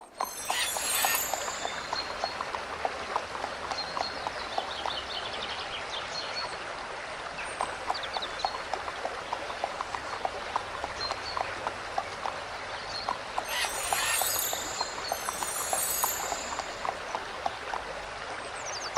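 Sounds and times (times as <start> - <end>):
hooves clip-clopping: 0.0 - 5.3, 7.6 - 18.3
high chirps: 0.1 - 2.3, 13.4 - 17.1.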